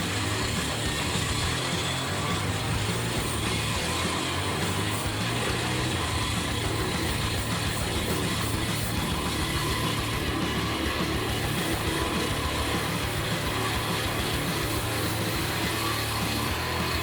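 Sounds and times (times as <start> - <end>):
heavy machine engine running: 0.0 - 17.0.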